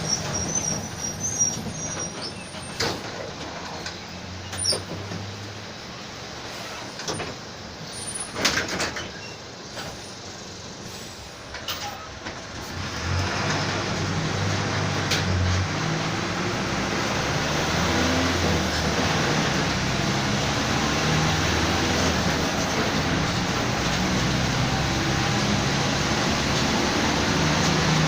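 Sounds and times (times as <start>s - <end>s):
bus diesel engine running: 0.0s - 28.0s
short hiss: 9.7s - 11.5s.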